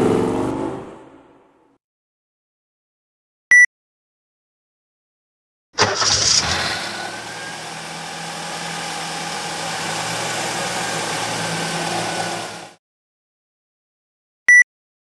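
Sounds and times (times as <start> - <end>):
car engine starting and idling: 5.8 - 12.8.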